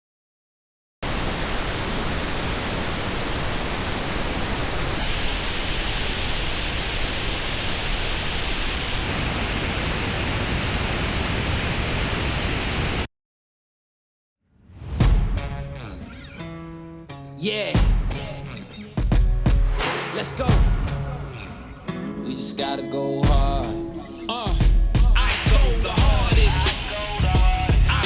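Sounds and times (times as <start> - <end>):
pink noise test signal: 1.0 - 13.1.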